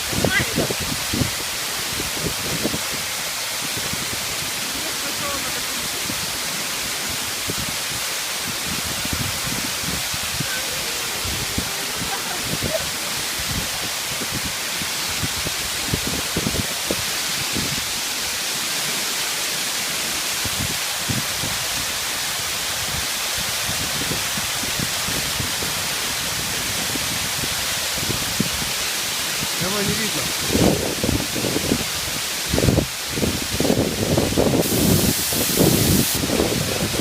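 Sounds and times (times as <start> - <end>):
wind buffeting microphone: 0.0 - 18.0, 30.3 - 37.0
waterfall rushing: 0.0 - 37.0.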